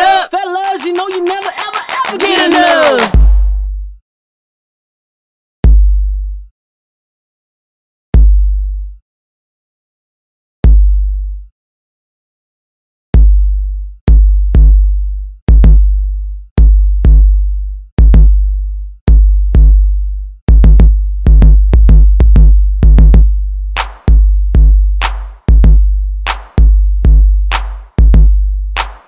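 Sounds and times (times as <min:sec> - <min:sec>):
hip-hop drum-machine beat: 0:00.0 - 0:03.7, 0:18.1 - 0:18.3, 0:20.5 - 0:29.0
snare-like hits: 0:01.4 - 0:03.6, 0:23.8 - 0:24.1, 0:25.0 - 0:25.4, 0:26.3 - 0:26.6, 0:27.5 - 0:27.8, 0:28.8 - 0:29.0
deep bass-drum hits: 0:03.2 - 0:03.7, 0:15.5 - 0:15.9, 0:18.0 - 0:18.4, 0:19.1 - 0:19.8, 0:20.5 - 0:29.0.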